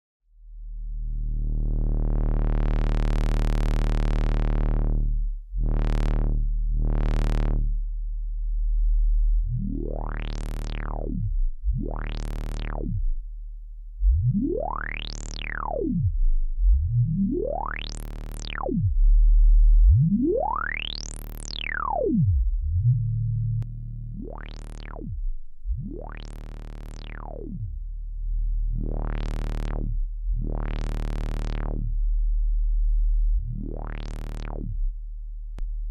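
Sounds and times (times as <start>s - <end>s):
low synth drone: 0.3s - 35.9s
synth filter sweeping: 14.0s - 19.0s, 19.8s - 27.8s.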